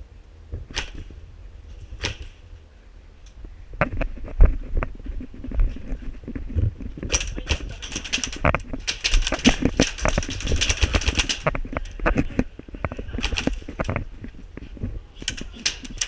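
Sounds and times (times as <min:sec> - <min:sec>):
gear clicking and rattling: 0:03.2 - 0:16.0.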